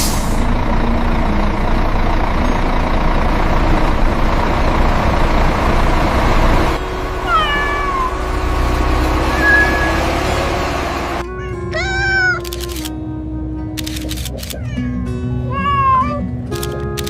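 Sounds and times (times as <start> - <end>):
vehicle engine and road rumble: 0.0 - 17.0
cat meowing: 7.2 - 8.2, 9.3 - 10.1, 11.2 - 12.6, 14.5 - 16.3.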